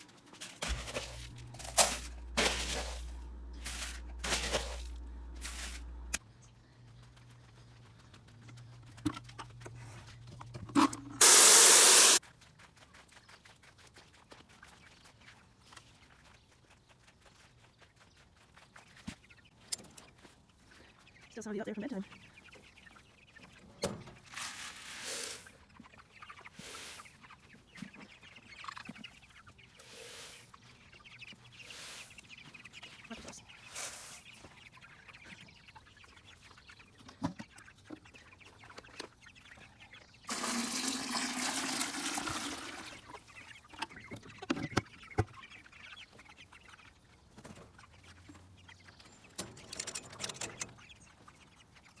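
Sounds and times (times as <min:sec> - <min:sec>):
chickens clucking: 0:00.6 - 0:06.2, 0:21.4 - 0:49.6
water rushing into waterer: 0:10.7 - 0:12.2, 0:40.3 - 0:43.2.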